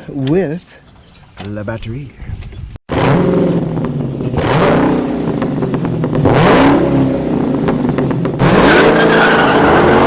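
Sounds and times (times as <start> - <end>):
car engine revving: 2.9 - 10.0.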